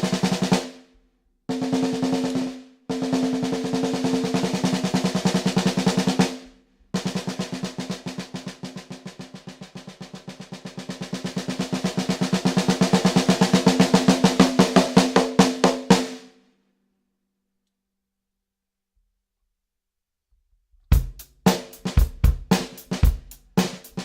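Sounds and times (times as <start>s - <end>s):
snare drum rolls: 0.0s - 0.9s, 1.5s - 16.2s, 20.9s - 24.0s.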